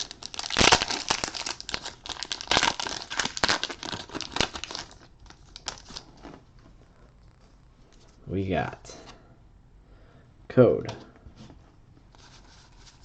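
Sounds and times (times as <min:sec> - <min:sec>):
foil wrapper tearing and crinkling: 0:00.0 - 0:06.1.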